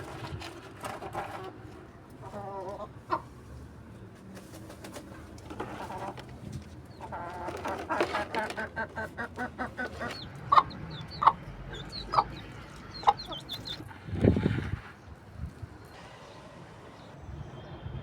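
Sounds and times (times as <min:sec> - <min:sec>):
chickens clucking: 0:00.0 - 0:03.6, 0:04.2 - 0:14.8
loud sharp chicken calls: 0:08.1 - 0:14.0.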